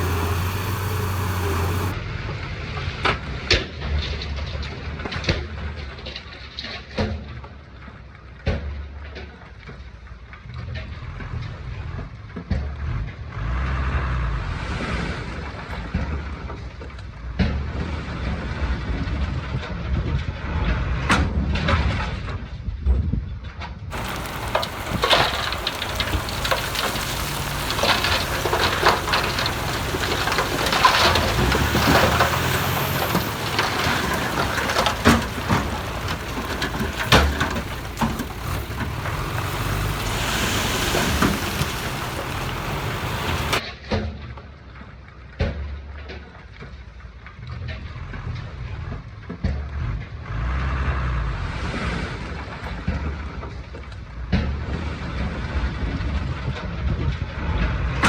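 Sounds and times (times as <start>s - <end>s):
dense crackling rattling noise: 0.0s - 2.0s, 23.9s - 43.6s
heavy machinery rumbling: 0.0s - 2.0s, 23.9s - 43.6s.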